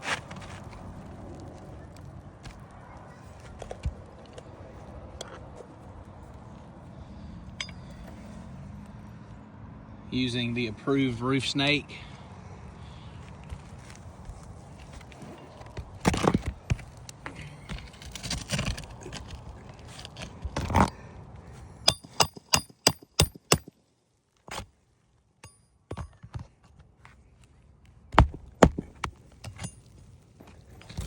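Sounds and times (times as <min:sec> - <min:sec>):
roofing tool scraping shingles: 0:14.8 - 0:20.9.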